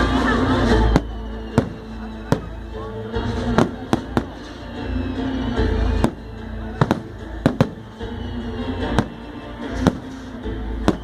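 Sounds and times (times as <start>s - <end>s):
background music: 0.0s - 11.0s
sharp bangs: 6.0s - 8.0s.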